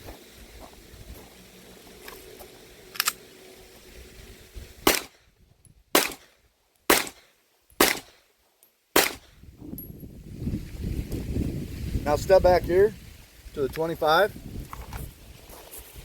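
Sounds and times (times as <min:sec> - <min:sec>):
pistol shots: 0:04.8 - 0:05.2, 0:05.9 - 0:08.2, 0:08.9 - 0:09.3.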